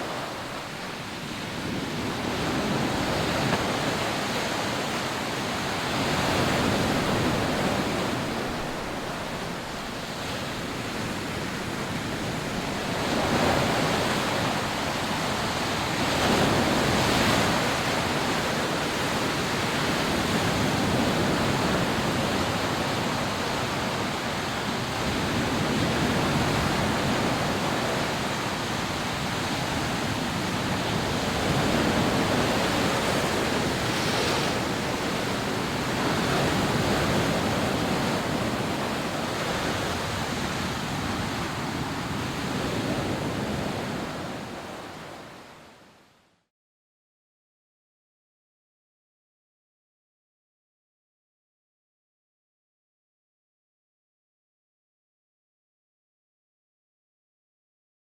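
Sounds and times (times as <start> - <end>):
sea waves breaking on beach: 0.0 - 46.0.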